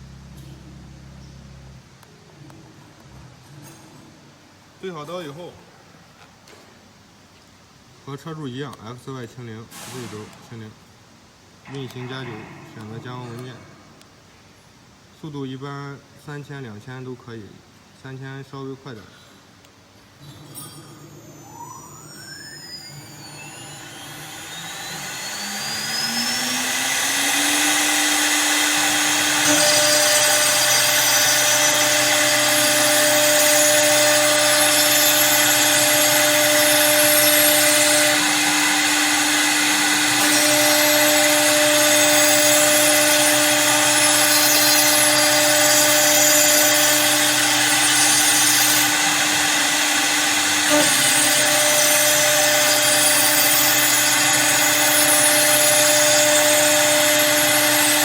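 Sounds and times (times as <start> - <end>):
high steady tone: 20.6 - 27.5
lathe motor whine: 21.1 - 58.0
cutter routing wood: 22.2 - 58.0.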